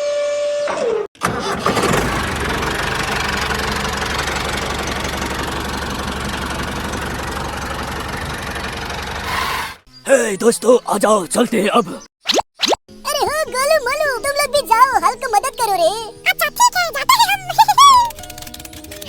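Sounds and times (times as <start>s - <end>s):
engine chugging: 1.2s - 9.9s.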